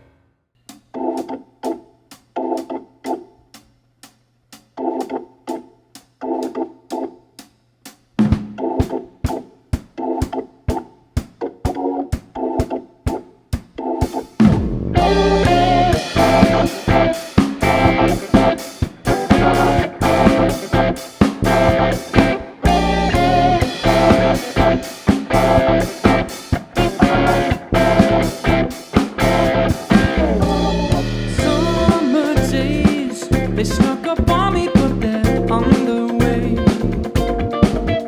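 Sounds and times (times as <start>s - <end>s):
drum kit steady beat: 3.6s - 38.0s
bass guitar: 14.4s - 38.0s
electric guitar: 14.4s - 38.0s.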